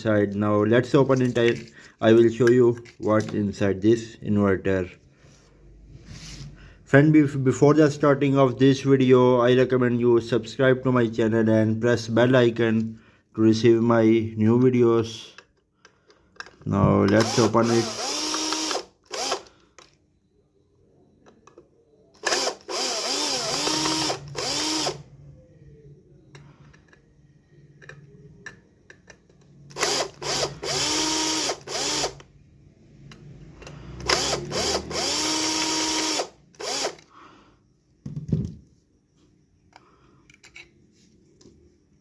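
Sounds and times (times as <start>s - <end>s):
power driver motor whine: 17.0s - 19.5s, 22.2s - 25.1s, 29.7s - 32.3s, 34.0s - 37.1s.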